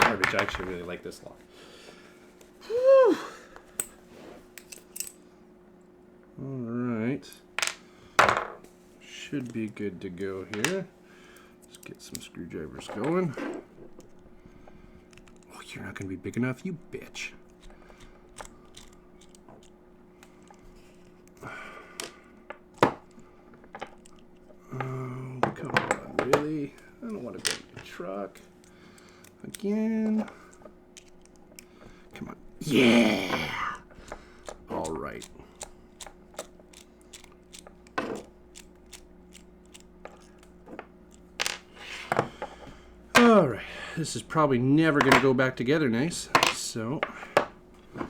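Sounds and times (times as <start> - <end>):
screwdriver and lock parts clicking: 17.5 - 21.2, 23.6 - 24.5, 25.6 - 32.2, 34.1 - 41.3.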